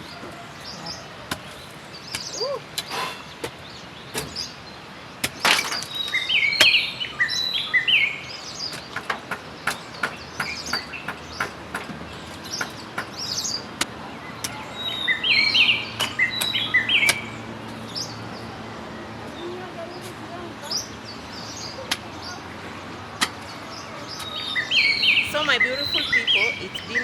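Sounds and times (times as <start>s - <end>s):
songbird chirping: 23.8s - 27.0s.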